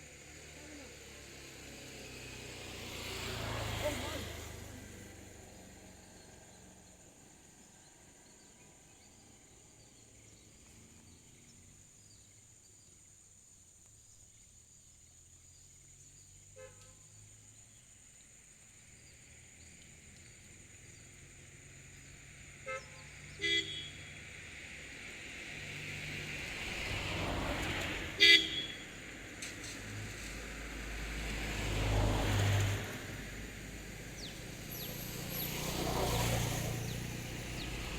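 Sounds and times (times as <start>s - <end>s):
vehicle passing by: 0.0s - 12.3s, 18.3s - 37.9s
vehicle horn toots: 16.6s - 17.0s, 22.6s - 24.1s, 28.1s - 29.0s.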